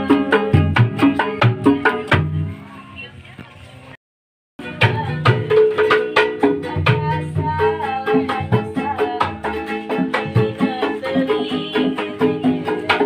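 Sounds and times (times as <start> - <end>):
held melody line: 4.6 - 13.0.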